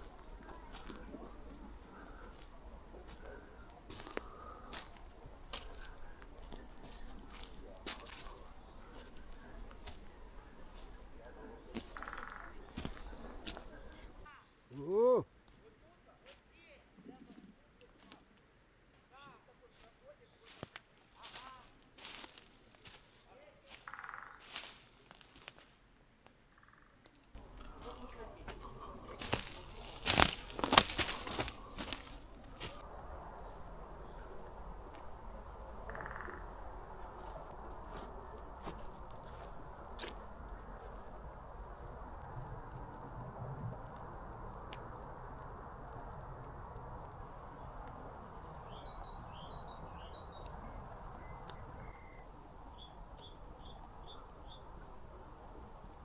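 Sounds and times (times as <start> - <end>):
loud crunching rustles: 0.0 - 14.2, 19.8 - 25.8, 27.3 - 41.0
faint bird chirps: 0.0 - 15.4, 18.9 - 22.2, 22.9 - 37.4, 47.4 - 55.8
songbird singing: 0.0 - 37.6, 47.2 - 56.0.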